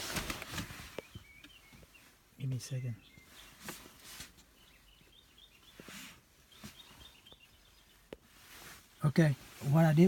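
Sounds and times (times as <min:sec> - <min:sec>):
handling clicks and rustles: 0:00.0 - 0:02.0
faint birds chirping: 0:00.0 - 0:10.0.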